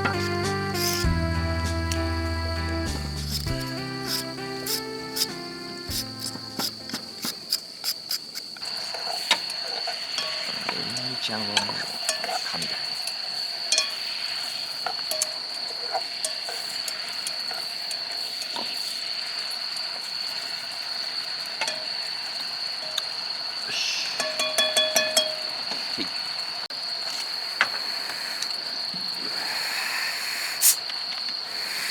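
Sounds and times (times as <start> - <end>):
food sizzling: 0.0 - 26.4
high insect trill: 0.0 - 31.9
utensils clicking: 3.2 - 8.6.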